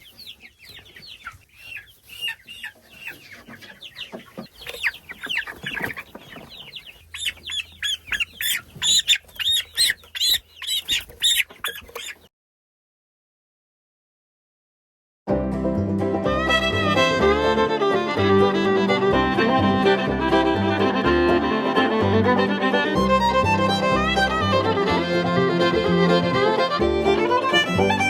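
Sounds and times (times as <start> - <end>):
scuffling: 0.0 - 12.2
chicks peeping: 0.0 - 12.3, 21.6 - 28.0.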